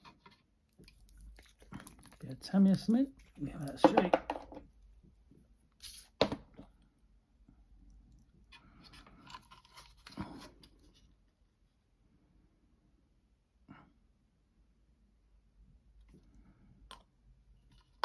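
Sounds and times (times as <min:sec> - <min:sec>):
plastic parts clicking and knocking: 0:03.5 - 0:04.7.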